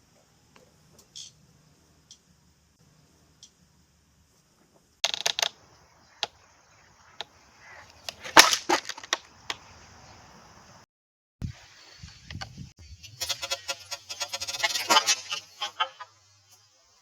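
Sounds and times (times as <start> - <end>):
trebuchet wooden knocks and clatter: 5.0 - 5.6, 7.0 - 9.6.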